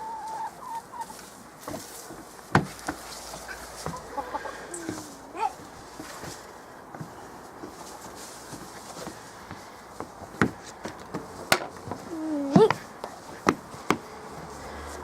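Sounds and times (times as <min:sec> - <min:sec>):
sharp knocks and taps: 0:02.5 - 0:03.0, 0:08.6 - 0:14.1.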